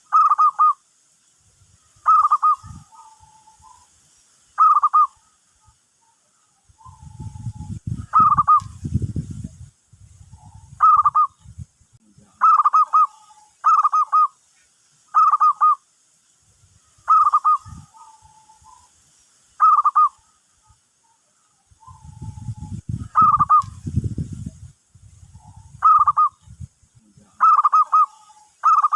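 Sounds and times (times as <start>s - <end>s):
doves cooing: 0.0s - 0.8s, 2.0s - 3.8s, 4.6s - 8.7s, 10.3s - 11.4s, 12.4s - 14.3s, 15.1s - 15.8s, 17.1s - 18.9s, 19.6s - 20.4s, 21.0s - 23.8s, 25.3s - 26.4s, 27.3s - 28.9s.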